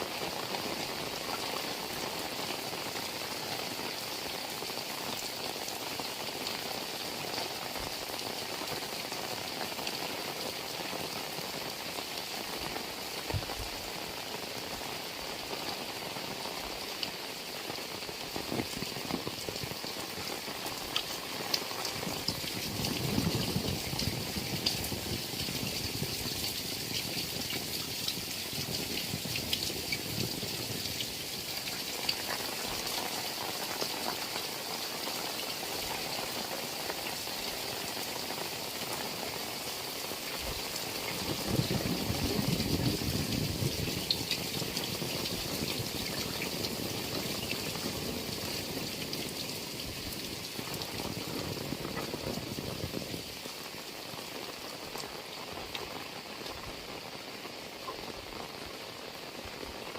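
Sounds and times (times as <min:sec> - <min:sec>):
heavy rain falling: 0:00.0 - 0:59.9
rain drop ticks: 0:15.5 - 0:53.8.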